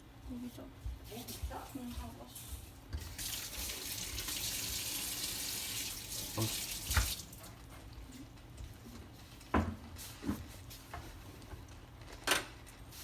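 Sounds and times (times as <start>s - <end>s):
tap running into a sink: 2.9s - 7.4s.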